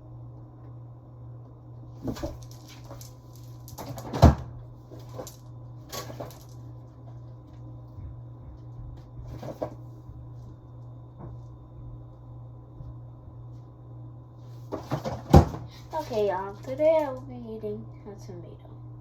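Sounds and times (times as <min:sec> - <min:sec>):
steady low hum: 0:00.0 - 0:19.0
kitchen doors and containers knocking: 0:14.8 - 0:15.7.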